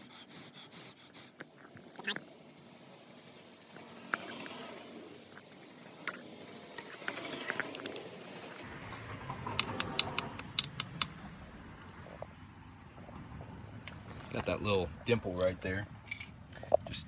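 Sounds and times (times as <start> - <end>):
metal parts clicking: 6.8 - 8.1.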